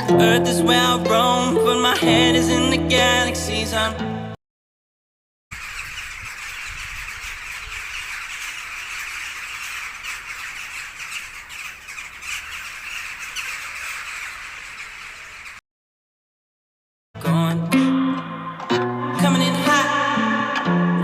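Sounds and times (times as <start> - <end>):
flock of birds squawking: 5.5 - 15.6.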